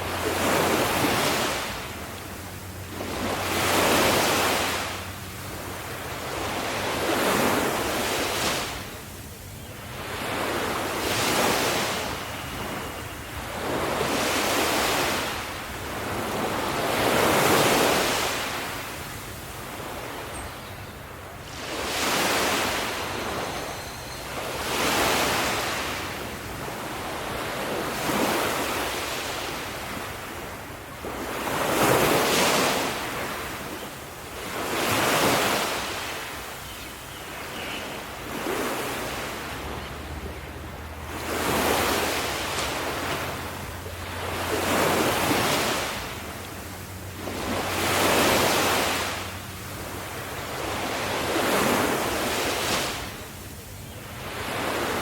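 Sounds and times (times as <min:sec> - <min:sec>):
ocean waves breaking on shore: 0:00.0 - 0:55.0.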